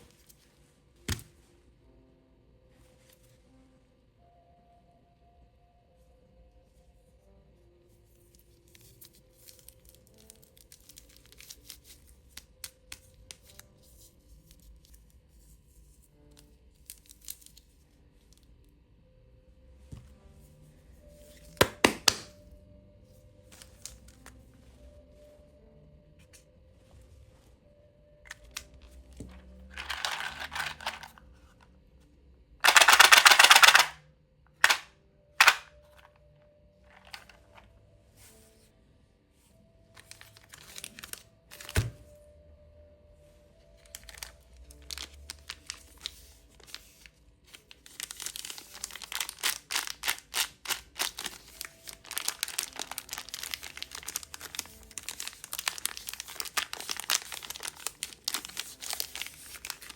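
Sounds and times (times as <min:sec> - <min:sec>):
plastic wrappers crinkling: 0:28.4 - 0:31.2, 0:32.6 - 0:34.0, 0:34.6 - 0:36.0, 0:36.9 - 0:37.6, 0:40.0 - 0:41.8, 0:43.8 - 0:59.9
wrapper tearing rip: 0:47.9 - 0:59.9.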